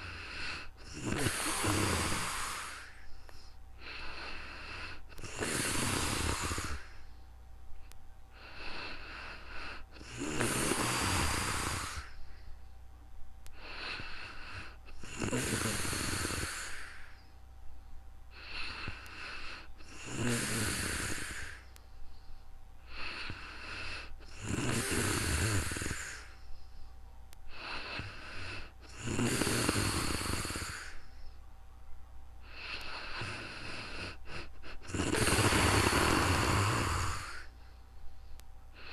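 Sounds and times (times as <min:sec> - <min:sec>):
person snoring loudly: 0:00.0 - 0:03.0, 0:03.9 - 0:07.0, 0:08.4 - 0:12.2, 0:13.6 - 0:17.2, 0:18.4 - 0:21.6, 0:22.9 - 0:26.3, 0:27.5 - 0:31.0, 0:32.5 - 0:37.5
soft breathing: 0:00.0 - 0:38.9.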